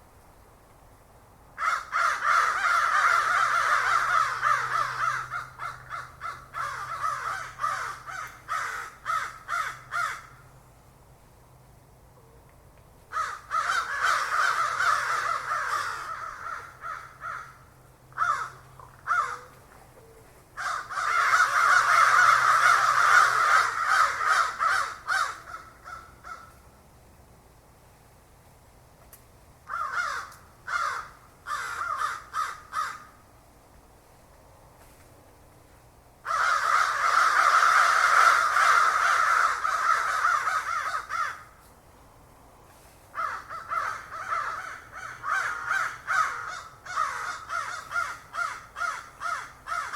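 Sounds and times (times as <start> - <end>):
crows cawing: 1.6 - 10.5, 13.1 - 19.6, 20.6 - 26.6, 29.7 - 33.2, 36.2 - 41.6, 43.1 - 49.9.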